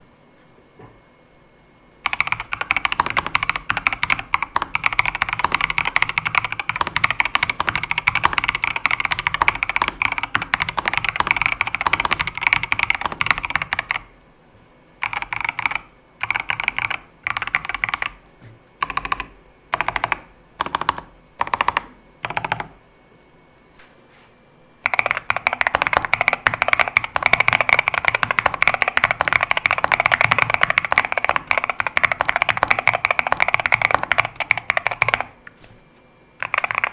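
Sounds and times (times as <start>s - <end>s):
mechanical keyboard typing: 2.0s - 14.1s, 15.0s - 22.8s, 24.8s - 35.4s, 36.4s - 36.9s.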